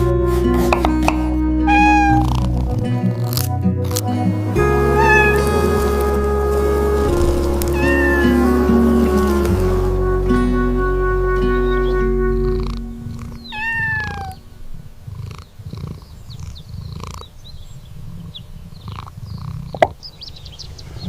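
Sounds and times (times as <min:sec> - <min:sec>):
background music: 0:00.0 - 0:14.3
cat purring: 0:00.6 - 0:09.9, 0:12.5 - 0:19.8
cat meow: 0:01.7 - 0:02.4, 0:05.0 - 0:05.4, 0:07.7 - 0:08.5, 0:13.4 - 0:14.4.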